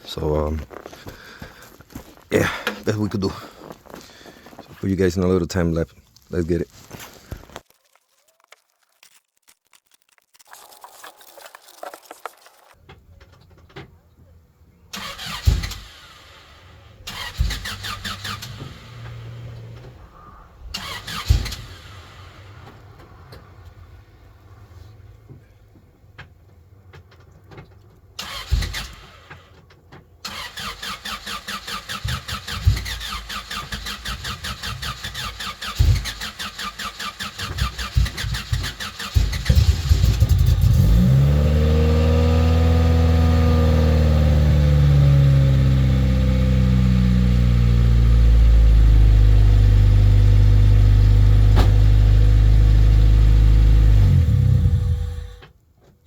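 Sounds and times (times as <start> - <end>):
car engine cranking and idling: 12.7 - 56.0.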